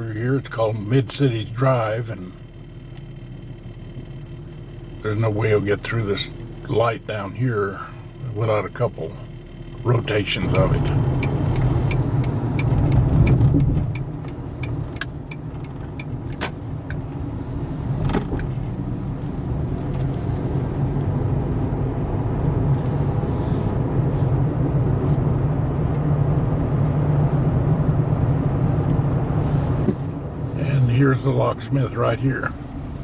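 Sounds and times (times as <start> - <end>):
car cabin engine and road rumble: 0.0 - 33.0
regular ticking: 8.8 - 17.3.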